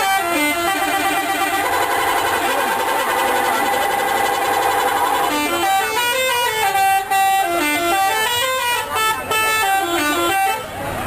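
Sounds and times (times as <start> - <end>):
bus musical horn playing a tune: 0.0 - 11.0.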